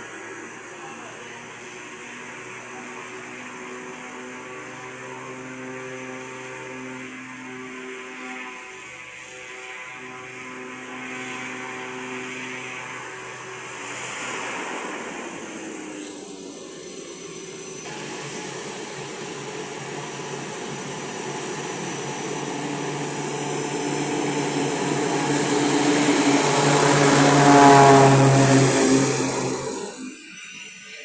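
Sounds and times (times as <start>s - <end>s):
airplane engine and propeller: 0.0s - 31.0s.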